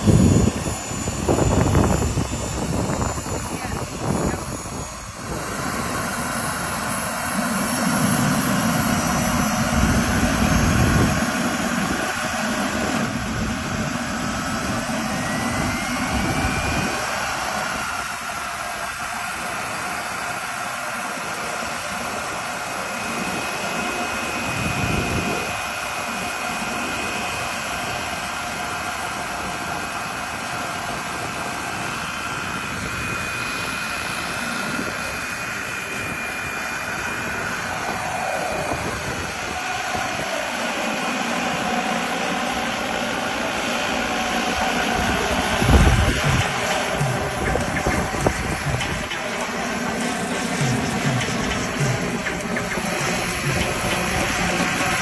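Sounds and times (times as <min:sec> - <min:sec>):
model helicopter turbine whine: 0:00.0 - 0:55.0
heavy low rumbles: 0:44.9 - 0:55.0.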